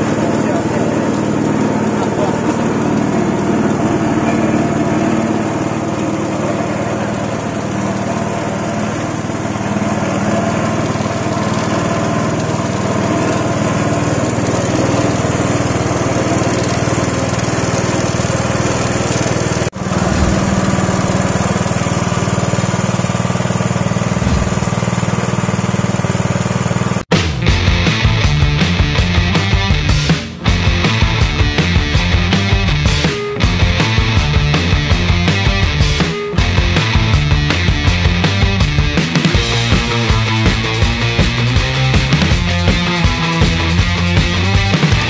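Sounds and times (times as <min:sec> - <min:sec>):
machine motor humming: 0:00.0 - 0:27.1.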